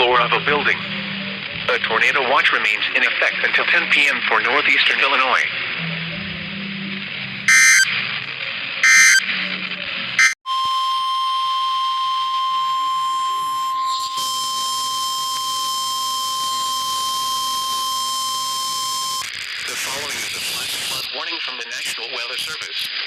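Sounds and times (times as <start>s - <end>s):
radio hiss: 0.0s - 5.6s, 16.3s - 23.0s
long warning alarm beep: 7.5s - 7.9s, 8.8s - 9.2s, 10.2s - 19.2s
warbling digital data tones: 7.5s - 7.9s, 8.8s - 9.2s, 11.5s - 20.1s.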